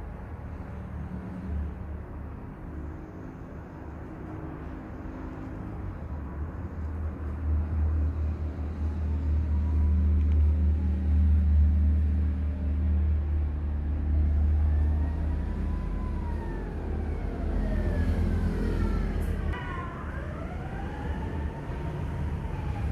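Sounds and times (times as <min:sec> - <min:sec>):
faint siren wail: 0:08.0 - 0:11.3, 0:13.8 - 0:22.9.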